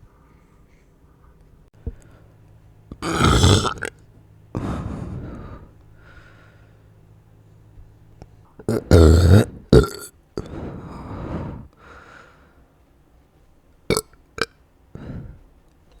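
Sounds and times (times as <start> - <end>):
breathy sounds: 2.9 - 6.8, 8.6 - 12.5, 14.9 - 15.5
person burping: 3.0 - 4.0, 8.7 - 10.1, 13.9 - 14.5.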